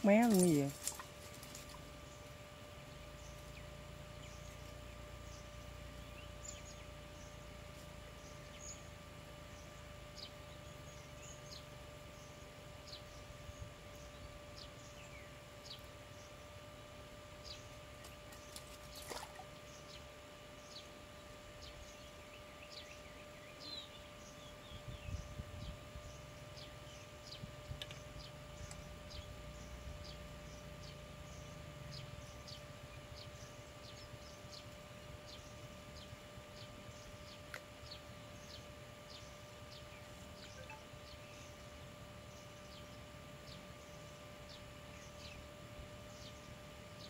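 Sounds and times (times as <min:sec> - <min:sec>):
birds chirping: 0:00.0 - 0:47.0
faint steady whine: 0:00.0 - 0:47.0
low wind rumble: 0:24.6 - 0:26.2.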